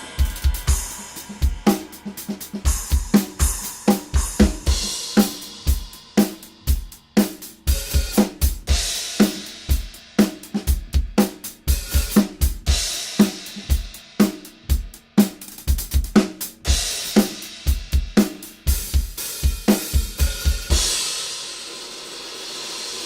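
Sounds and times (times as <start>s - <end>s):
crash cymbal: 0.0s - 10.2s, 20.3s - 23.0s
drum kit groove: 0.0s - 23.0s.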